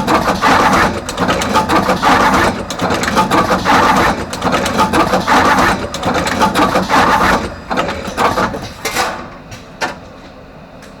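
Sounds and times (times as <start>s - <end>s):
crimping machine clatter: 0.0s - 9.3s.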